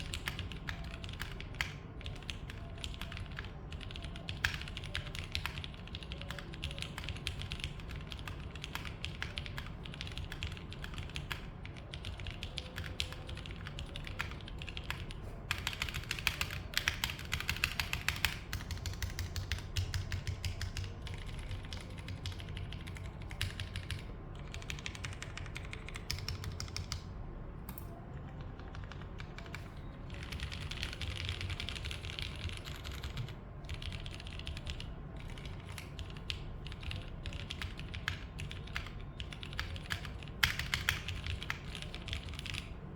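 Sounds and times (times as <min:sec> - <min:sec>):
mechanical keyboard typing: 0:00.0 - 0:27.1, 0:27.7 - 0:42.8.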